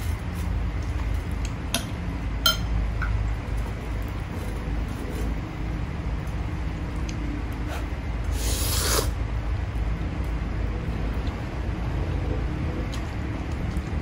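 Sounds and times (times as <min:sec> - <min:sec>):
steady low hum: 0:00.0 - 0:14.0
loud slurp of noodles: 0:07.7 - 0:09.2.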